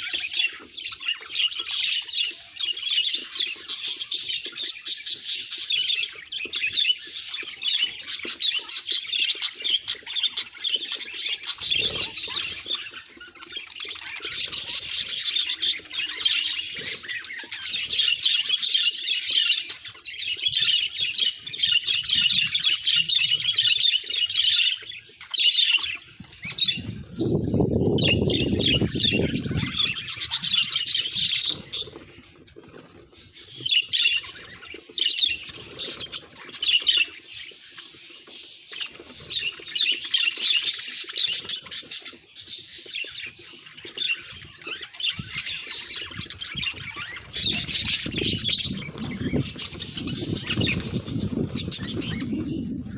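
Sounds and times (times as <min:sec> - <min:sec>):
low fluttering noise: 0:47.3 - 0:52.9.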